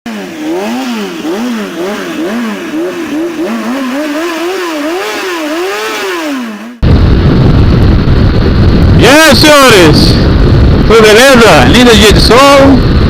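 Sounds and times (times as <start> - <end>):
motorcycle engine revving: 0.1 - 9.0.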